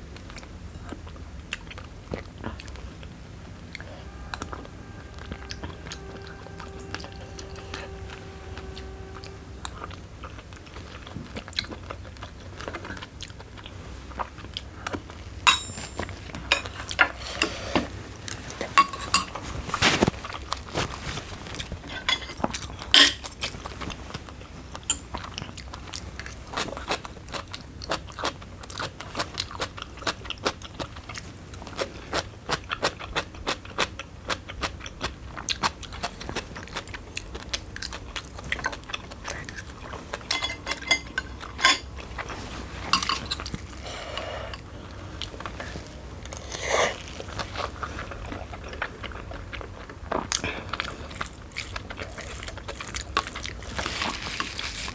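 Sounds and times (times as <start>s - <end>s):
person chewing crunchy food: 0.2s - 54.9s
low hum: 3.2s - 11.2s.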